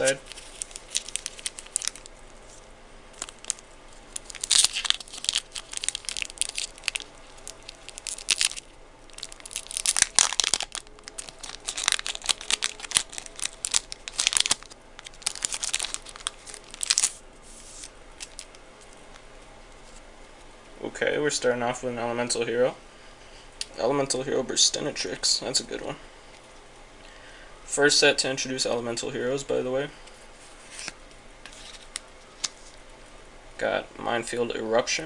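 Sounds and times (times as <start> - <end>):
wrapper tearing and crinkling: 0.0 - 18.6.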